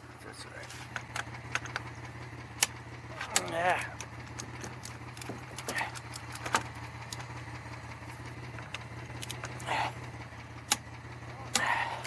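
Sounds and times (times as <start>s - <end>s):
car engine idling: 0.0s - 12.0s
sharp clicks and metallic taps: 0.6s - 7.4s, 8.1s - 9.8s, 10.4s - 10.9s.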